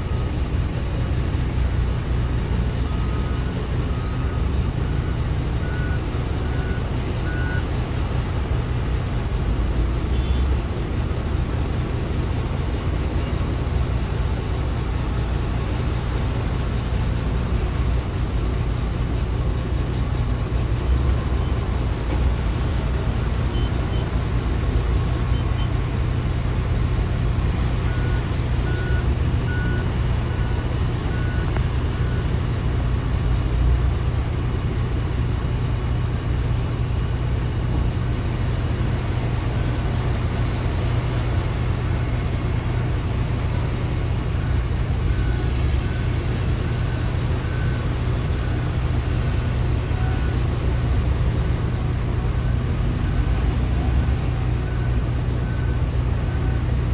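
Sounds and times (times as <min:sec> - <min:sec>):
diesel engines droning: 0:00.0 - 0:56.9
reversing alarm beeping: 0:02.7 - 0:08.9, 0:23.5 - 0:36.0.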